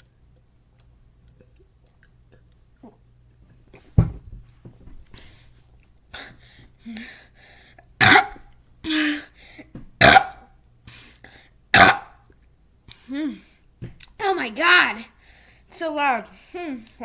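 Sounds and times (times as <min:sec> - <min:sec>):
thump: 0:04.0 - 0:04.8
person burping: 0:08.0 - 0:08.4, 0:10.0 - 0:10.4, 0:11.8 - 0:12.2
person coughing: 0:08.0 - 0:09.2, 0:10.0 - 0:10.4, 0:11.8 - 0:12.2.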